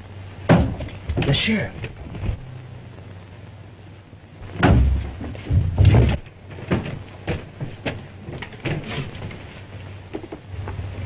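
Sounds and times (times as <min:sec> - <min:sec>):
heavy thuds: 0:04.4 - 0:11.0.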